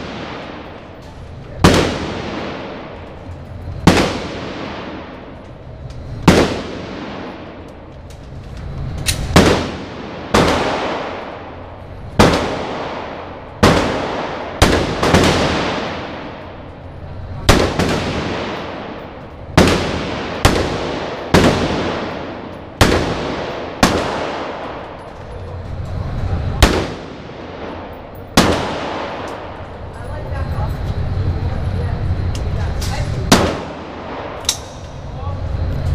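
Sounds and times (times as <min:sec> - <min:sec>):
gunshots with echo: 0:00.0 - 0:01.0, 0:01.6 - 0:03.1, 0:03.8 - 0:05.4, 0:09.3 - 0:11.6, 0:12.2 - 0:16.6, 0:17.4 - 0:25.0, 0:26.6 - 0:29.6.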